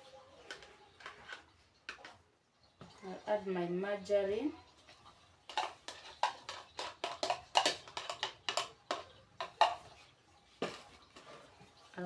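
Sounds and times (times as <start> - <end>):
metal spoon clinking on bowl: 5.5 - 9.8.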